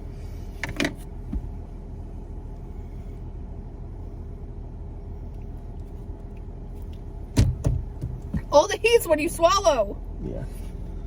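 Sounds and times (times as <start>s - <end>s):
low rumble inside car cabin: 0.0s - 11.0s
low thump: 7.3s - 8.6s.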